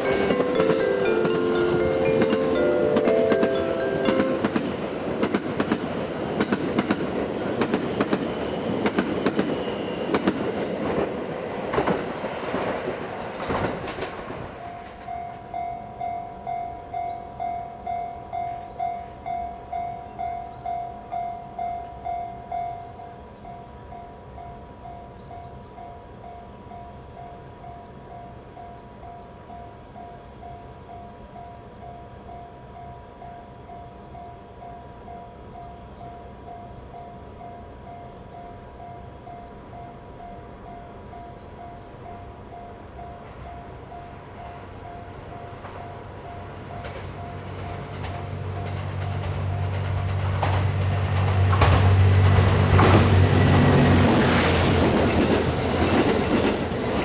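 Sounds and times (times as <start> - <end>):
level crossing bell dinging: 0.0 - 5.0
train wheel clicks: 0.0 - 16.5, 39.5 - 57.0
train engine rumble: 0.0 - 57.0.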